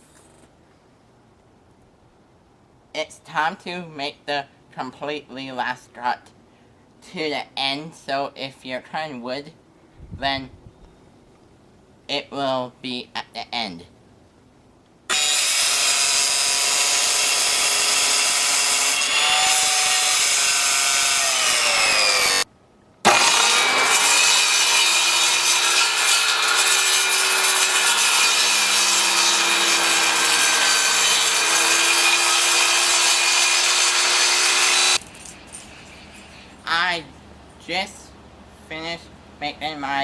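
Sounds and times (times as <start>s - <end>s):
table saw cutting wood: 15.1s - 22.5s, 23.1s - 35.0s.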